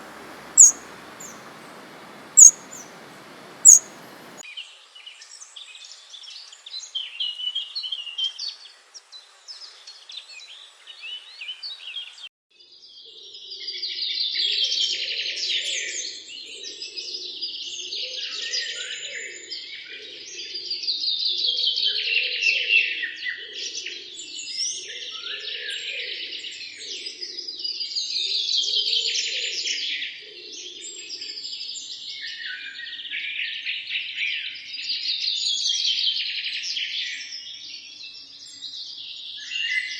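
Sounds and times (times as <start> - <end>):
forest birds singing and chirping: 0.0 - 4.5
dense chorus of many birds: 0.0 - 7.4, 23.2 - 39.9.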